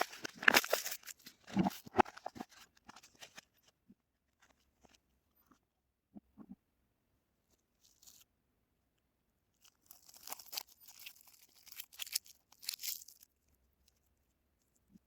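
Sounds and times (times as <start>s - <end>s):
wrapper crackling and rustling: 0.0s - 3.4s, 9.6s - 13.3s.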